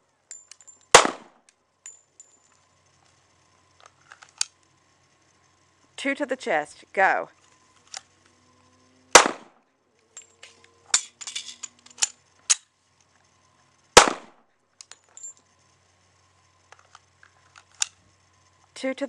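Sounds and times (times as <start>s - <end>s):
pistol shots: 0.9s - 1.4s, 9.1s - 9.6s, 14.0s - 14.4s
light clicks and clatter: 14.8s - 15.5s.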